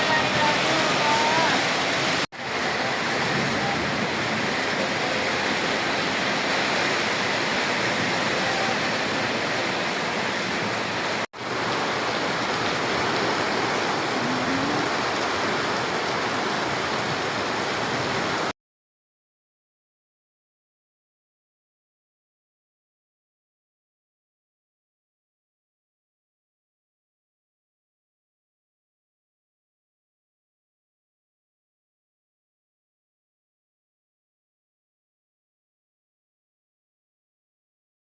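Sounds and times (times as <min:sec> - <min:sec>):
heavy rain pouring: 0:00.0 - 0:18.5.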